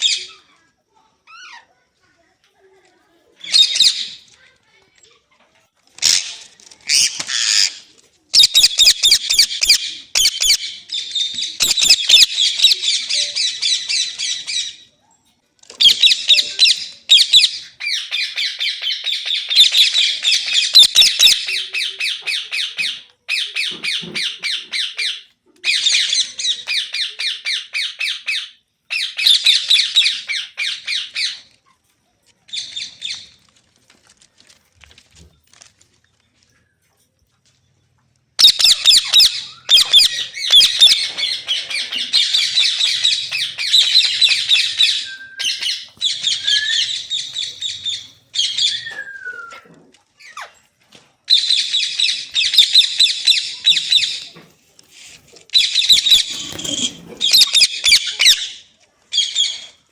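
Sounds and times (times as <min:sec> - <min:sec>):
parakeet screeching squawks: 0:38.4 - 0:49.6, 0:55.6 - 0:58.6.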